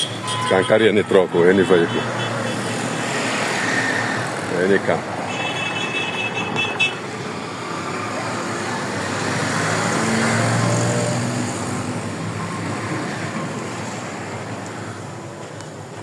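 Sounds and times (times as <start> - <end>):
vehicle passing by: 6.0 - 14.4.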